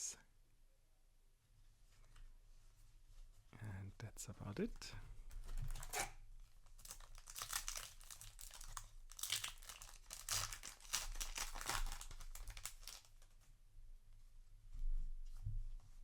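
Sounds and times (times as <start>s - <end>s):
foil wrapper crinkling and tearing: 5.7s - 13.4s.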